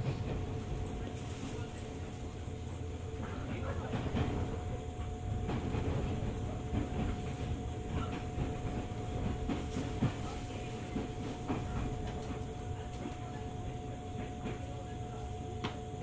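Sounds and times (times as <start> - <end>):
rail joint clicks: 0.0 - 14.9
train wheels rumbling on rail: 0.0 - 16.0.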